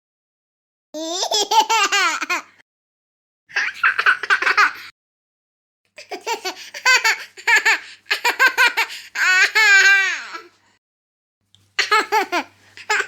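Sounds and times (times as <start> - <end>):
young child laughing: 3.5 - 4.9, 6.0 - 10.5, 11.8 - 13.0.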